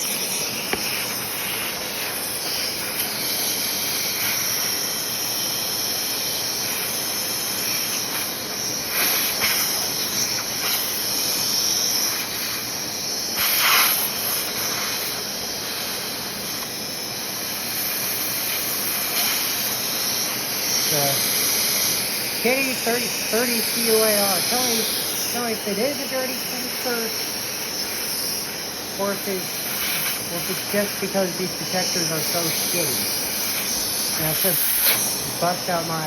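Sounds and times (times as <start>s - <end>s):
vacuum cleaner running: 0.0s - 36.0s.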